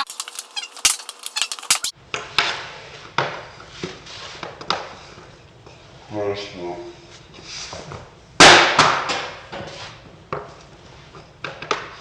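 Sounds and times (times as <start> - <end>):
hockey stick cracking pucks: 0.0 - 2.5.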